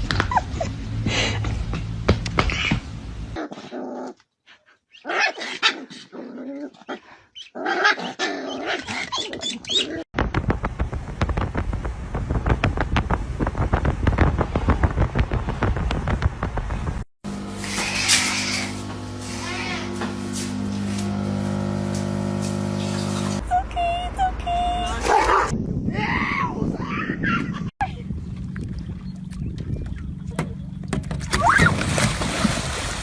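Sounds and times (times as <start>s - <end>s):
dog barking and growling: 3.4s - 4.2s, 4.9s - 10.0s.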